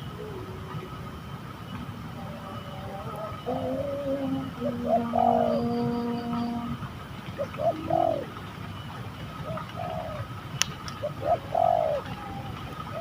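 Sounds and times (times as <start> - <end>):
doves cooing: 0.0 - 13.0.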